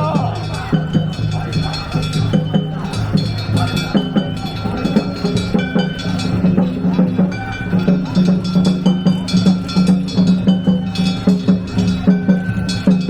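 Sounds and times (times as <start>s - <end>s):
drums beating: 0.0s - 13.0s.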